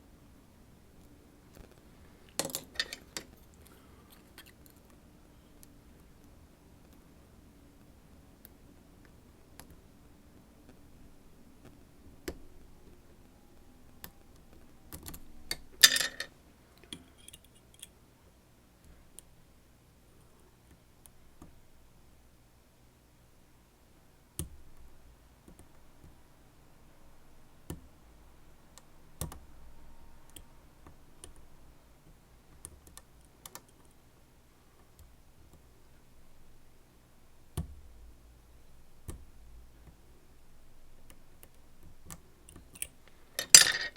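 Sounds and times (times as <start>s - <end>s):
lockpicking tools clicking: 2.4s - 3.3s.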